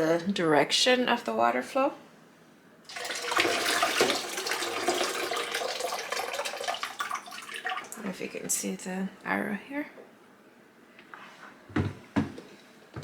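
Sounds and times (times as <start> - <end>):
water pouring and splashing: 2.9 - 8.0.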